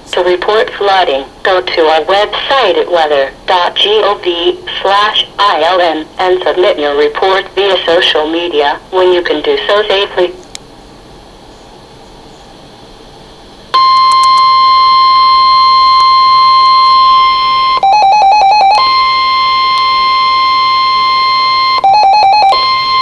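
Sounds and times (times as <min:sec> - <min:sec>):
high alarm tone: 0:13.8 - 0:23.0.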